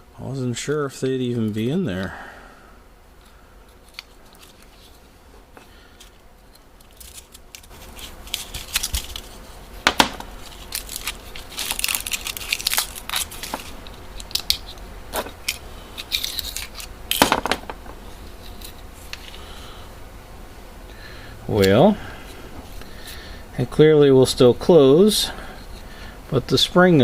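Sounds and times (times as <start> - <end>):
tape peeling and tearing: 3.8 - 5.0, 6.0 - 17.3.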